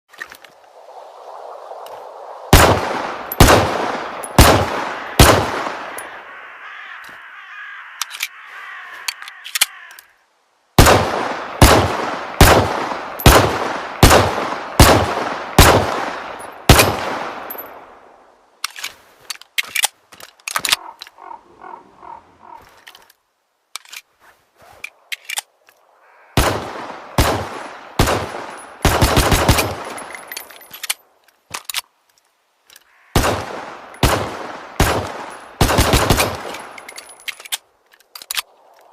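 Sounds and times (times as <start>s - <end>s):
pistol gunshots: 2.5s - 6.1s, 10.8s - 17.6s, 26.4s - 30.1s, 33.2s - 36.8s.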